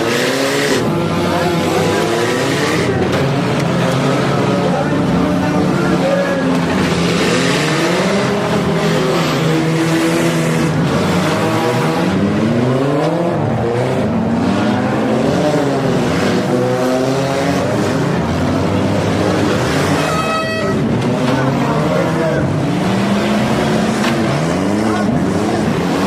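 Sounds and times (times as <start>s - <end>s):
car engines revving: 0.0s - 26.0s.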